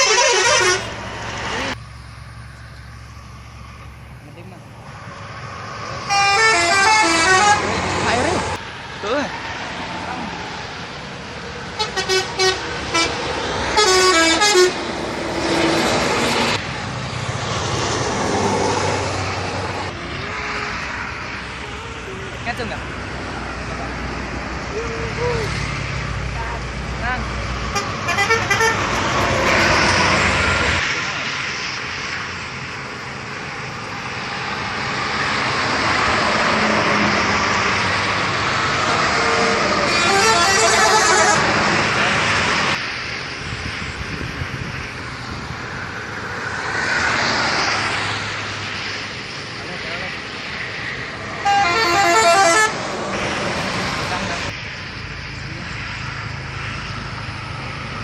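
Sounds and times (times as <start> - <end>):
multi-tone musical air horn: 0.0 - 0.9, 6.1 - 7.7, 13.7 - 14.8, 27.7 - 29.8, 39.2 - 41.5, 51.4 - 52.8
bus passing: 0.0 - 58.0
highway traffic rushing: 0.0 - 58.0.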